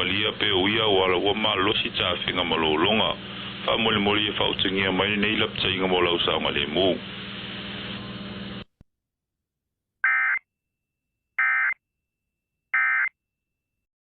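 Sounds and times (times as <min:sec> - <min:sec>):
radio hum and hiss: 0:00.0 - 0:08.7.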